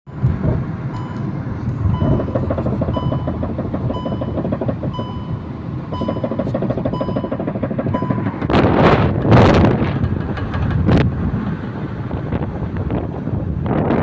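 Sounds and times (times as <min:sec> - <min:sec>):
low rumble: 0:00.1 - 0:14.0
short electronic beep: 0:00.9 - 0:01.3, 0:01.9 - 0:08.4
rhythmic knocking from wheel hub: 0:01.9 - 0:11.9.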